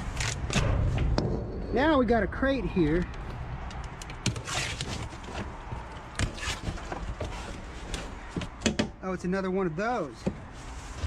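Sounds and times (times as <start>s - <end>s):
rustling scrapes: 4.2s - 8.6s, 10.4s - 11.0s.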